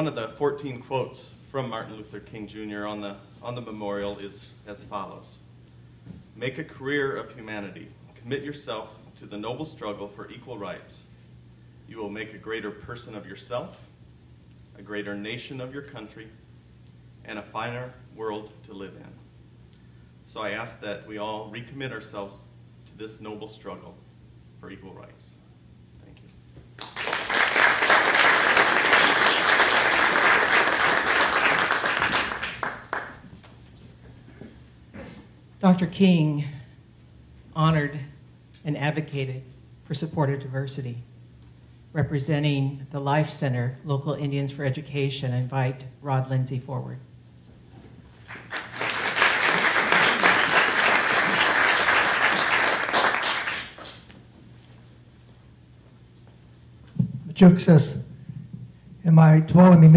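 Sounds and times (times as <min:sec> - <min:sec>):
audience applauding: 0:26.8 - 0:33.3, 0:48.2 - 0:54.1.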